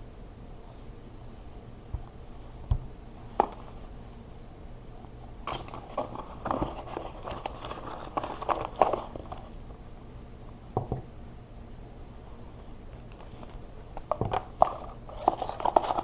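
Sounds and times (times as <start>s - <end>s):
plastic crackling and rustling: 5.4s - 9.6s, 13.1s - 16.0s.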